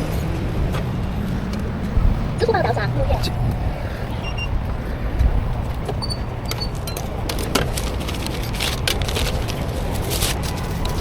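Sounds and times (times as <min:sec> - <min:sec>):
road traffic rumble: 0:00.0 - 0:11.0.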